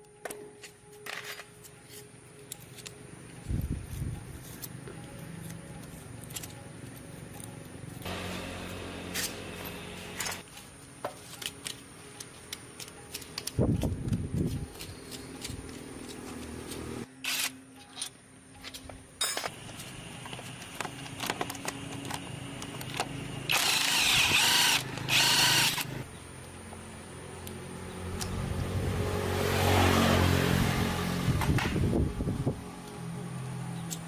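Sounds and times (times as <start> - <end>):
power drill bursts: 23.5 - 26.0.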